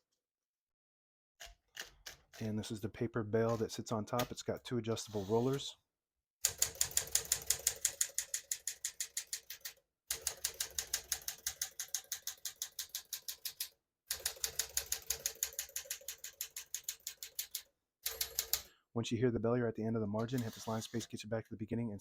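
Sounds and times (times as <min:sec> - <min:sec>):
typewriter typing: 0:06.4 - 0:18.7, 0:20.2 - 0:21.1.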